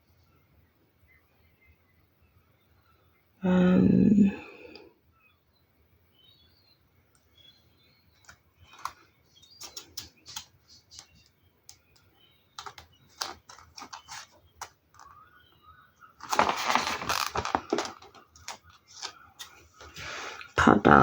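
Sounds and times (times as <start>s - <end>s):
paper leaflet crinkling: 8.2s - 11.3s, 12.5s - 15.4s, 16.0s - 20.0s.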